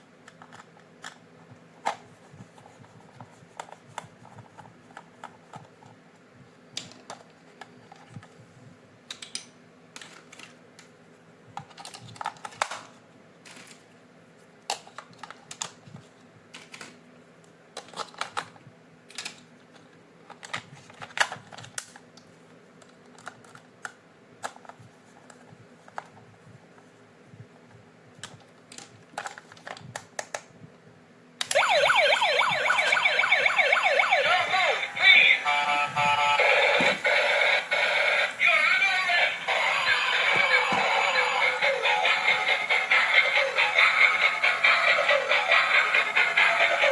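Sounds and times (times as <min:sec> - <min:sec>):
electronic toy siren with jingle: 0:31.5 - 0:36.4, 0:41.4 - 0:46.9.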